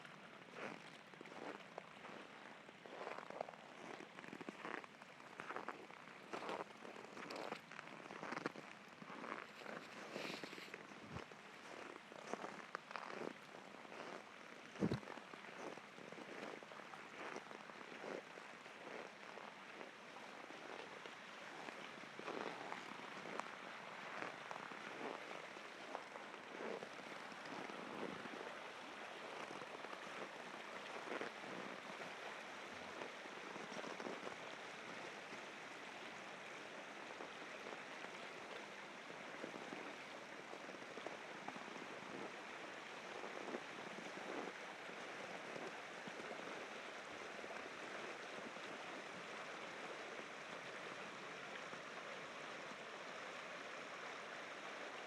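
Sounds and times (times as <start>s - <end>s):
footsteps in snow: 9.1s - 10.9s.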